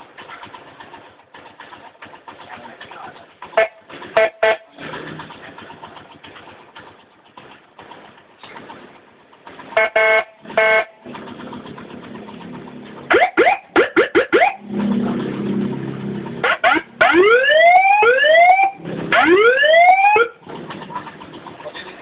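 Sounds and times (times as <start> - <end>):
motorcycle siren: 3.6 - 4.8, 9.8 - 11.0, 13.1 - 20.4.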